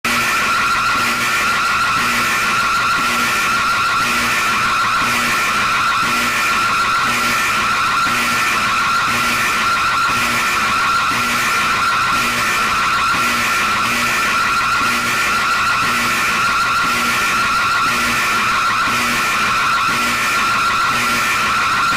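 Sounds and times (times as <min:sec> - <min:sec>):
loud noisy alarm tone: 0:00.1 - 0:21.9.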